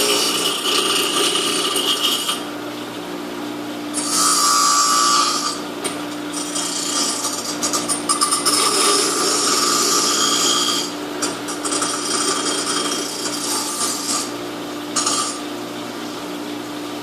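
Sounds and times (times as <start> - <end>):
electric grinder running: 0.0 - 2.5, 4.0 - 5.6, 6.3 - 14.4, 15.0 - 15.4.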